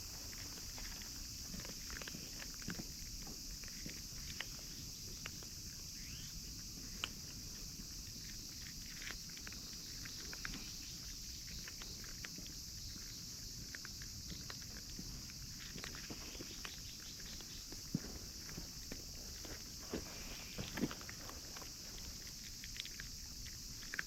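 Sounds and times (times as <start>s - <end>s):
cats crunching dry food: 0.0s - 24.0s
steady high hiss: 18.3s - 22.0s.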